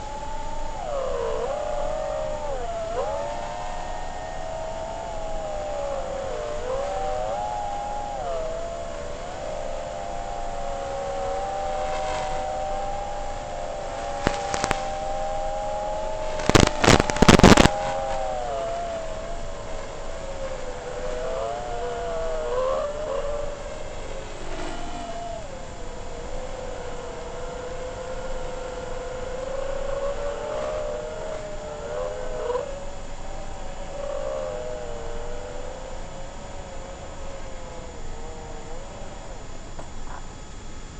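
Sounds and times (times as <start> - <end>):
loud crackling burst: 13.9 - 18.7
sharp clicks: 16.4 - 18.0.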